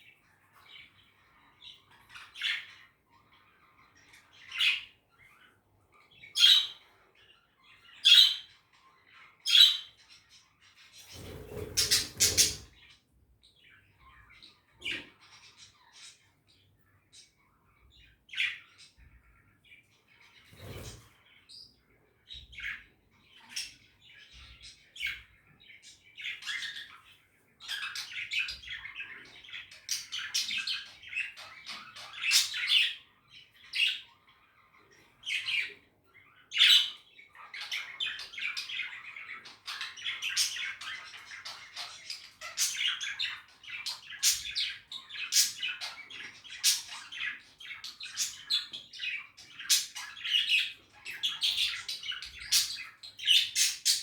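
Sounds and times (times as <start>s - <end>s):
budgerigars chattering: 1.4s - 6.9s, 7.6s - 8.5s, 9.5s - 10.0s, 11.0s - 12.9s, 26.0s - 35.8s, 36.4s - 54.0s.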